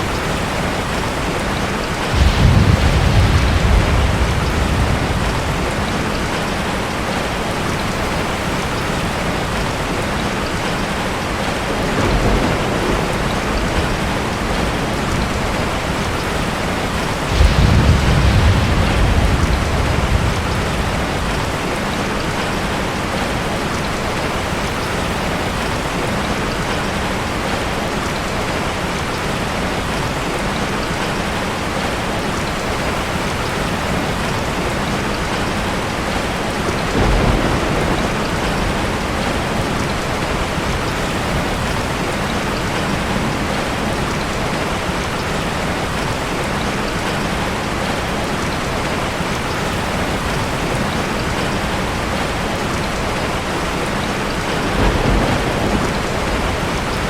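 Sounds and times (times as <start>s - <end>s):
rolling thunder: 0.0s - 25.9s, 34.2s - 44.6s, 48.7s - 57.0s
heavy rain: 0.0s - 57.0s.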